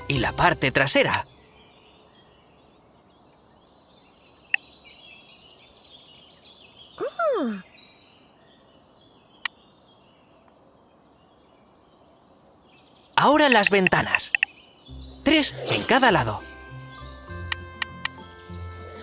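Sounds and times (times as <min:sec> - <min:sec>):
faint birdsong: 0:00.0 - 0:19.0
cartoon clicks: 0:13.4 - 0:14.5.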